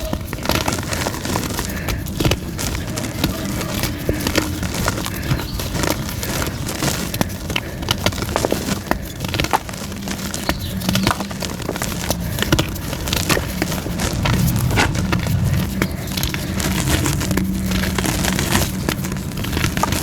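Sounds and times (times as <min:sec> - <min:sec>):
chalk crackling and crunching: 0:00.0 - 0:20.0
low rumble: 0:11.4 - 0:20.0.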